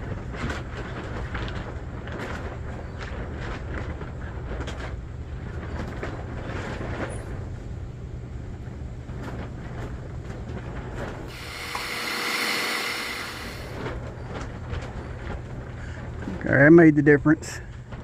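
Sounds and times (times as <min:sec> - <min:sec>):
steady hiss: 0:11.3 - 0:13.8.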